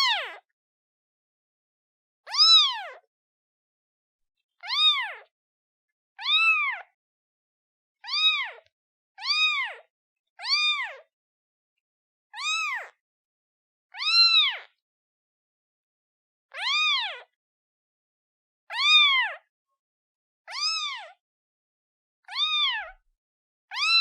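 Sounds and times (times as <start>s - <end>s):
kitten meowing: 0.0s - 0.4s, 2.3s - 3.0s, 4.6s - 5.3s, 6.2s - 6.9s, 8.0s - 9.8s, 10.4s - 11.0s, 12.4s - 13.0s, 14.0s - 14.7s, 16.6s - 17.3s, 18.7s - 19.4s, 20.5s - 21.1s, 22.3s - 23.0s, 23.7s - 24.0s.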